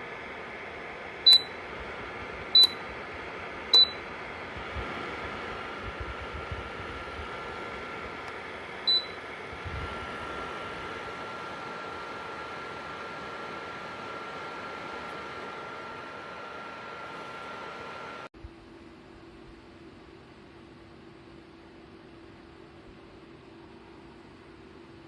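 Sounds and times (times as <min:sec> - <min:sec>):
space heater fan running: 0:00.0 - 0:25.0
short high beeps: 0:01.3 - 0:01.6, 0:02.6 - 0:02.8, 0:03.8 - 0:04.0, 0:08.9 - 0:09.2.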